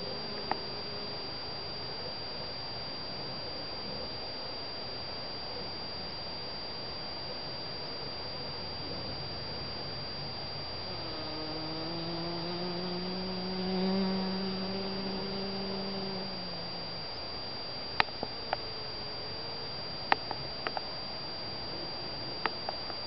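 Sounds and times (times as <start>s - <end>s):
honeybee buzzing in flight: 10.7s - 17.0s.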